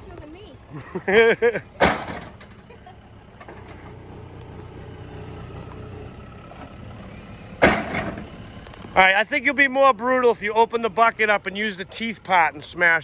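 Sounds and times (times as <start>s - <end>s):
diesel engine running: 0.0s - 13.0s
loud metal crash: 1.8s - 2.6s, 7.6s - 8.3s.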